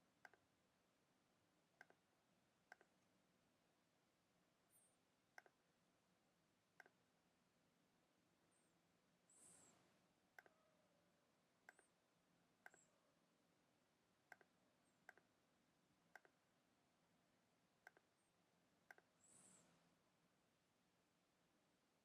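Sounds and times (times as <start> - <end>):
low room hiss: 0.0 - 22.0
computer mouse clicks: 0.2 - 0.4, 1.8 - 2.0, 2.7 - 3.0, 4.8 - 5.6, 6.8 - 7.0, 9.4 - 10.6, 11.6 - 11.9, 12.6 - 12.9, 14.3 - 15.3, 16.1 - 16.4, 17.8 - 18.1, 18.9 - 19.8.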